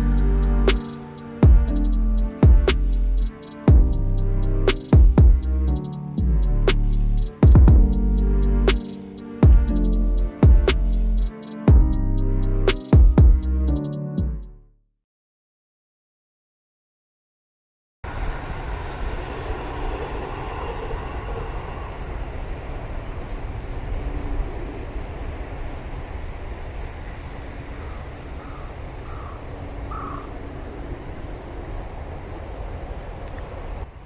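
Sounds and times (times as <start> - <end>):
low steady rumble: 0.0 - 8.8, 9.4 - 13.8
crickets chirping: 0.0 - 11.6, 18.1 - 34.0.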